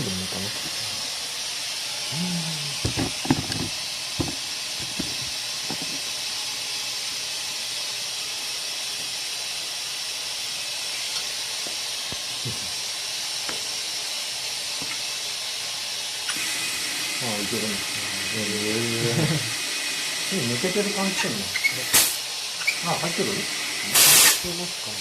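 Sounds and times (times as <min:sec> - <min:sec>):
compressed air hissing: 0:00.0 - 0:06.1, 0:16.1 - 0:25.0.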